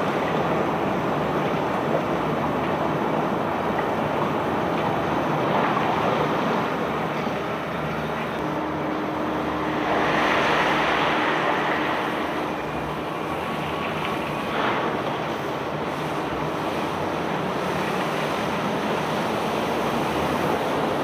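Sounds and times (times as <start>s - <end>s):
barge machinery rushing din: 5.2s - 21.0s.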